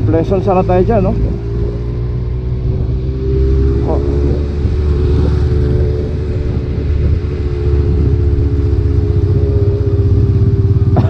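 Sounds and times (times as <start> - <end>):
motorcycle engine cruising: 0.0 - 11.0
wind and road rumble: 0.0 - 11.0.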